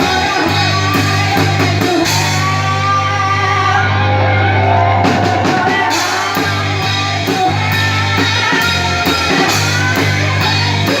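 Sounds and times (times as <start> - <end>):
rock music with guitar: 0.0 - 11.0
steady drum beat: 5.0 - 11.0.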